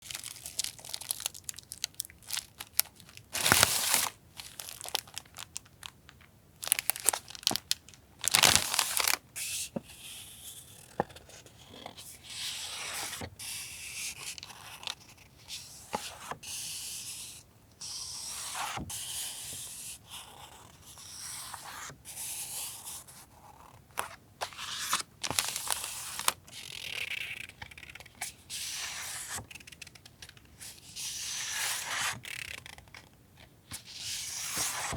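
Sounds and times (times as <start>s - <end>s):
packaging crackles: 0.0s - 9.2s
paper rustling and crinkling: 0.0s - 9.2s, 24.0s - 33.1s, 33.7s - 34.9s
paper tearing: 34.2s - 34.9s.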